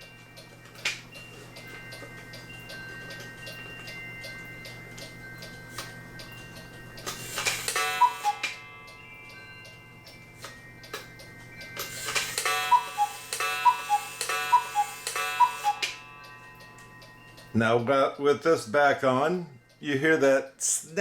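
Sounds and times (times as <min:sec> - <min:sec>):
snapping in clock works: 0:00.0 - 0:18.3
clock ticking: 0:00.0 - 0:21.0
two-note cuckoo call: 0:07.3 - 0:09.0, 0:12.0 - 0:16.3.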